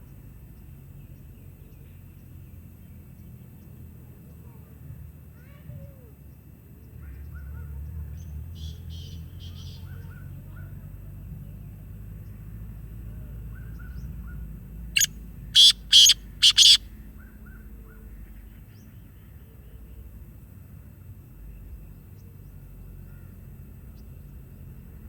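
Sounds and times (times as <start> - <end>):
parrot chirping: 15.0 - 16.8
parrot squawking: 15.0 - 16.8.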